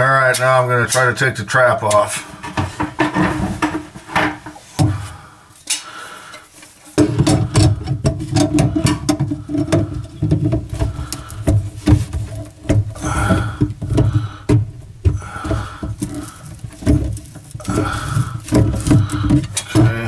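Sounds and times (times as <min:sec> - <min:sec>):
knocking and clattering at sink drain: 0:02.3 - 0:05.0, 0:07.0 - 0:20.0.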